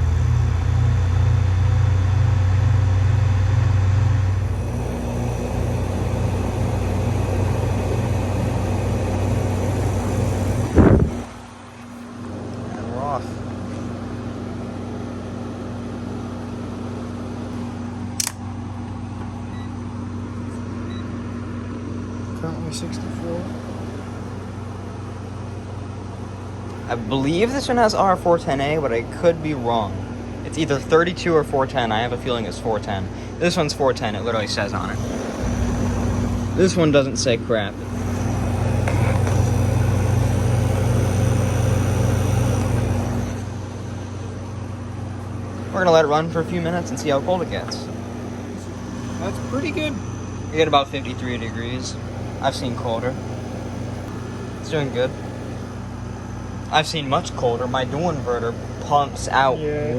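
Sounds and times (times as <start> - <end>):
air conditioner humming: 0.0 - 59.9
sharp click: 18.2 - 18.4.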